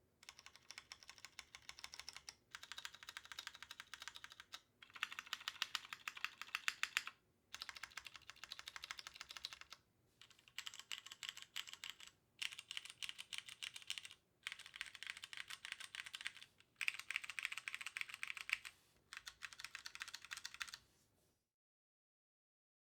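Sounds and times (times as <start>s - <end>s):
mechanical keyboard typing: 0.2s - 20.8s.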